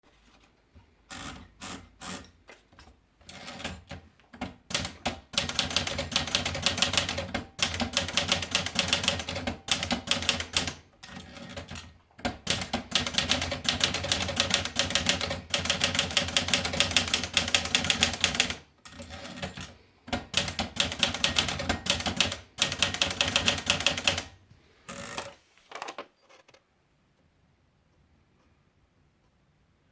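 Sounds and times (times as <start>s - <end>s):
typewriter keystrokes: 3.3s - 24.4s.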